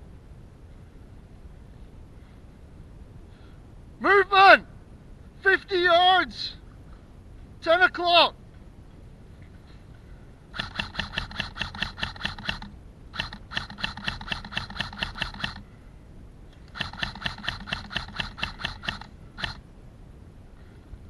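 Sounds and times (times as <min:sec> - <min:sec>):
airsoft rifle full-auto bursts: 0:10.6 - 0:15.6, 0:16.7 - 0:19.6
gearbox motor humming: 0:10.6 - 0:15.6, 0:16.7 - 0:19.6.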